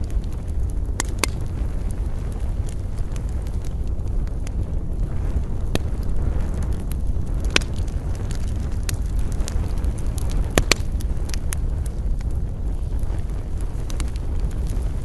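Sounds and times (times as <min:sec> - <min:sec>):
campfire crackling and popping: 0:00.0 - 0:15.0
low rumble of wind: 0:00.0 - 0:15.0.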